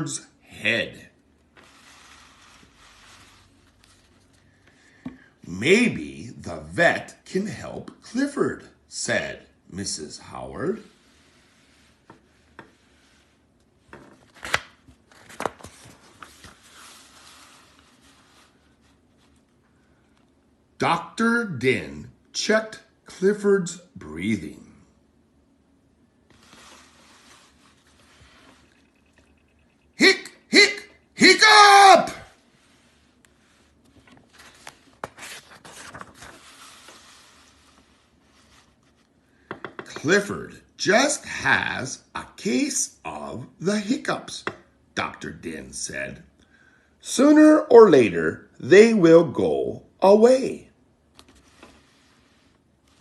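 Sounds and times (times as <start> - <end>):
soft paper rustling: 1.2 - 5.3, 10.5 - 20.4, 26.1 - 29.9, 32.0 - 39.8, 51.0 - 53.0
paper pages snapping: 14.3 - 15.7.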